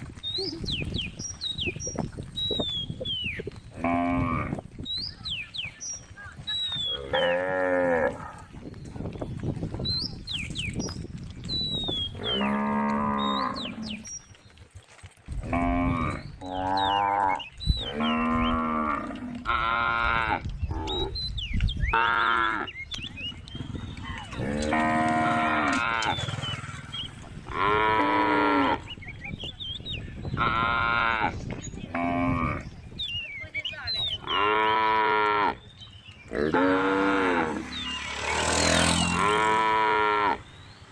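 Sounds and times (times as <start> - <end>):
cows mooing: 3.7 - 4.6, 6.9 - 8.5, 12.1 - 14.1, 15.4 - 21.2, 21.9 - 22.8, 24.2 - 29.0, 30.4 - 32.7, 34.2 - 35.6, 36.3 - 40.5.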